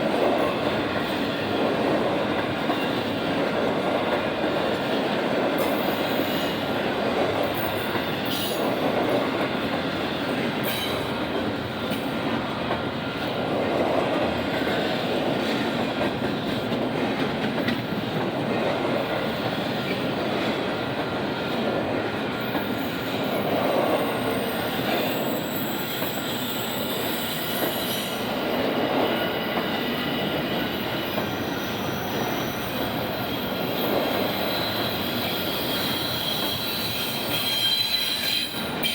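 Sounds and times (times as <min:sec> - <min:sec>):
freight train wheels rumbling: 0:00.0 - 0:38.9
high-pitched wheel squeal: 0:34.3 - 0:38.9.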